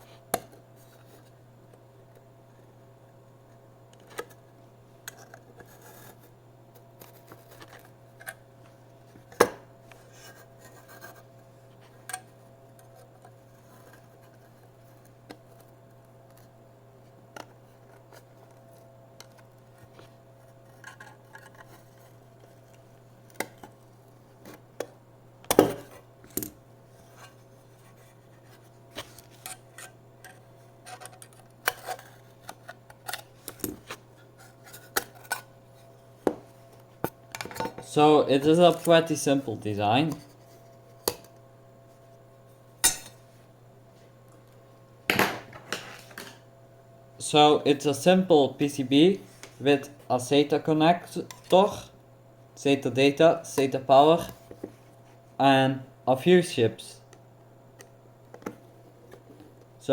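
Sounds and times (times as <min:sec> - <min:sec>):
steady low hum: 0:00.0 - 0:59.9
clicks scrapes and knocks: 0:17.4 - 0:23.8.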